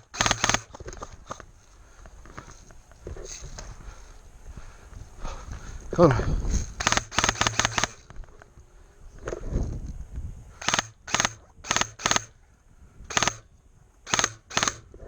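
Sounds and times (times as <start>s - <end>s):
airsoft gun shots: 0.0s - 1.4s, 6.0s - 8.4s, 10.6s - 12.4s, 13.1s - 15.0s.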